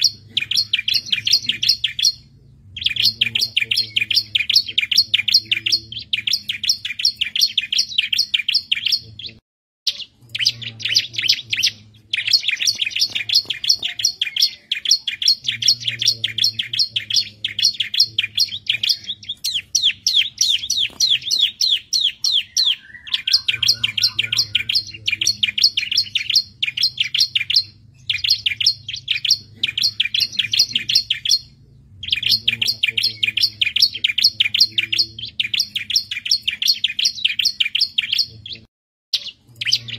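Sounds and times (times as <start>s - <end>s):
bird fast sharp chirps: 9.9s - 38.6s.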